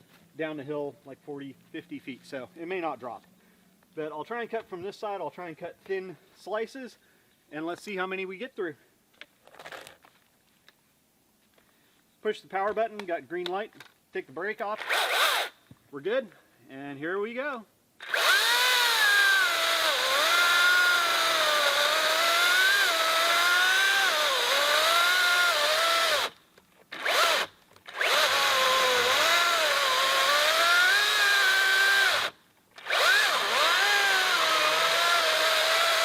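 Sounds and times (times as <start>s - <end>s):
electric chainsaw cutting log: 14.8s - 15.5s, 18.0s - 36.0s.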